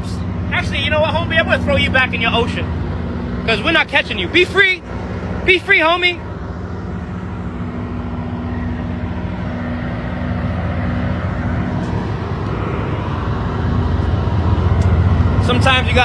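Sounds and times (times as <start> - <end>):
boat engine running: 0.0 - 16.0.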